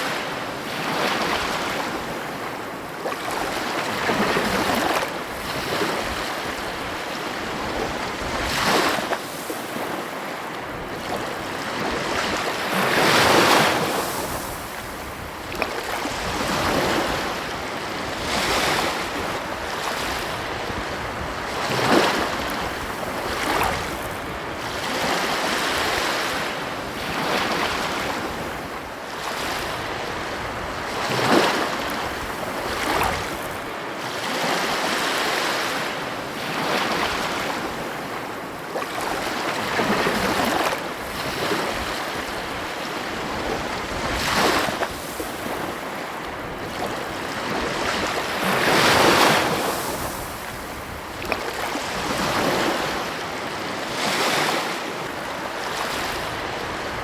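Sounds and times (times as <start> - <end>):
ocean waves breaking on beach: 0.0 - 57.0
wind on microphone: 3.0 - 10.0, 10.6 - 33.7, 39.0 - 57.0.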